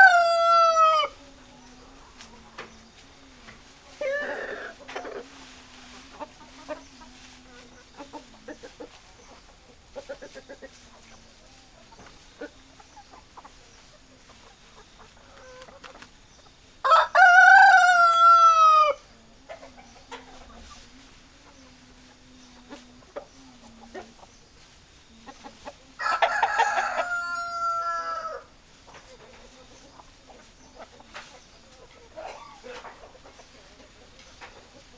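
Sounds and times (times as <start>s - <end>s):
rooster crowing: 0.0s - 1.2s, 16.8s - 19.0s, 26.0s - 28.5s
hens clucking: 0.0s - 34.9s.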